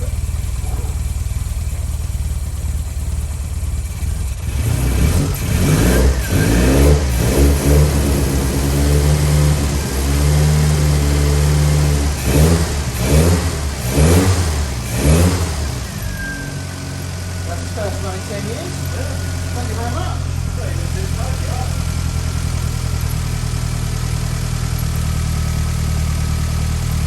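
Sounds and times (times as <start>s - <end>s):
car engine idling and revving: 0.0s - 27.0s.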